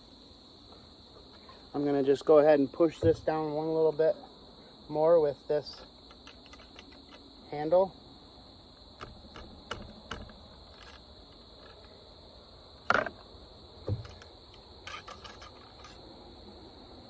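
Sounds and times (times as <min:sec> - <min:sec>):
crickets chirring: 0:00.0 - 0:17.0
rattle of small clicks: 0:06.0 - 0:07.3, 0:09.0 - 0:12.0, 0:13.9 - 0:16.0
ramrod knocks and clicks: 0:06.1 - 0:07.2, 0:09.0 - 0:11.0, 0:12.9 - 0:13.2
dull thud: 0:13.8 - 0:14.2.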